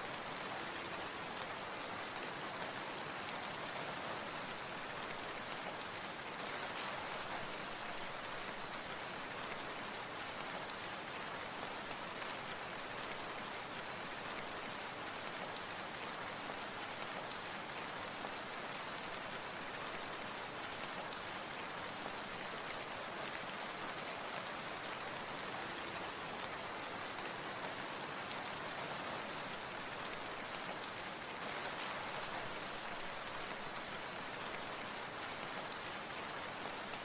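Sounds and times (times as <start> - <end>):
falling water rushing: 24.8 - 37.0.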